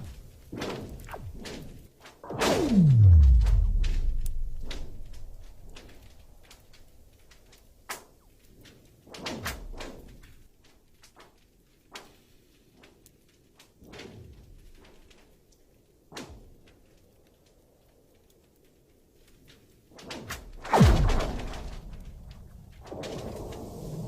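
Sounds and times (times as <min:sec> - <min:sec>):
faint ice ticks: 0:05.1 - 0:20.0.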